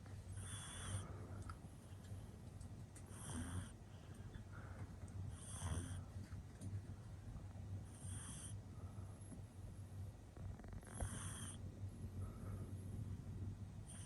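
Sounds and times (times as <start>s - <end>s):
puppy snoring: 0.3s - 1.2s, 3.0s - 3.9s, 5.3s - 6.2s, 7.8s - 9.5s, 10.3s - 11.7s, 13.8s - 14.0s.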